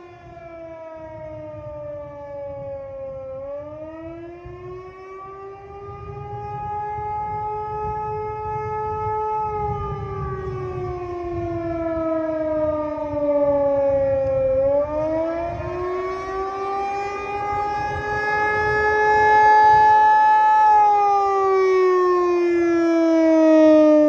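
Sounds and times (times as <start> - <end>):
warning siren sliding tone: 0.0 - 24.0.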